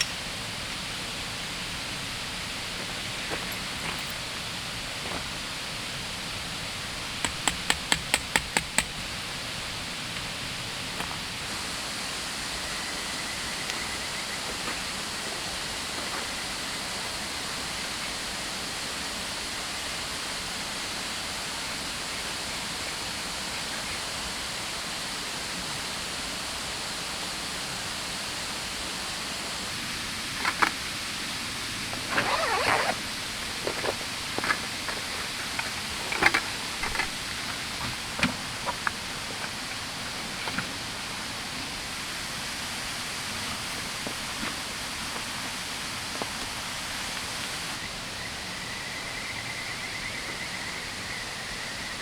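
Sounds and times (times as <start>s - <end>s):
quick sharp taps: 7.2s - 9.0s
river flowing: 8.6s - 48.1s.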